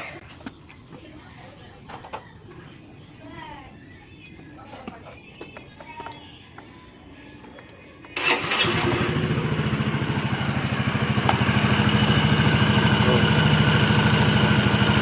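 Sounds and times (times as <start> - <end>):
scooter engine starting and idling: 8.1 - 15.0.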